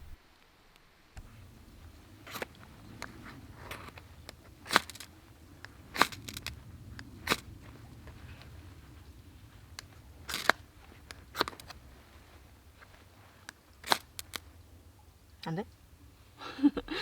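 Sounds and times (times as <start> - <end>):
low background rumble: 1.2 - 17.0
sharp clicks and knocks: 9.6 - 11.9, 12.8 - 14.6.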